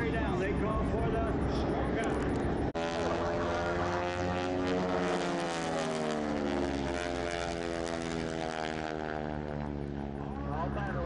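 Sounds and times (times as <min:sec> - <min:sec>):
propeller plane engines droning: 0:00.0 - 0:11.0.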